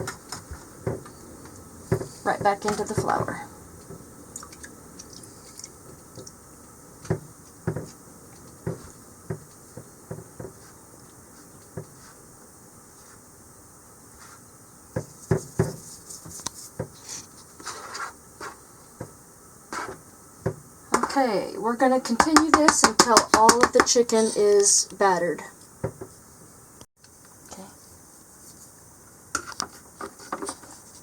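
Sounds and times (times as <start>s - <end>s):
flour rustling: 14.1s - 18.9s.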